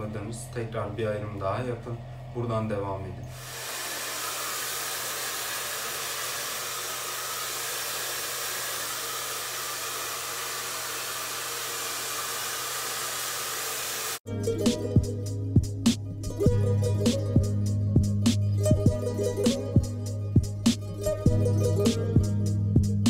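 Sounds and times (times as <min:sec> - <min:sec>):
hair dryer blowing: 0:03.2 - 0:14.2
plucked-string music: 0:14.3 - 0:23.0.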